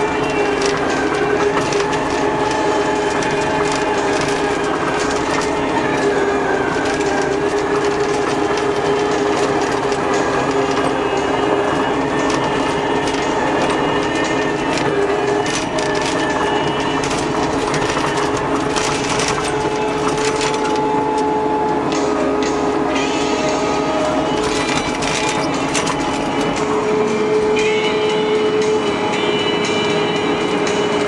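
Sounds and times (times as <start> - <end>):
small rattles and clicks: 0.0 - 21.3, 24.4 - 26.7
track loader engine whine: 0.0 - 31.0.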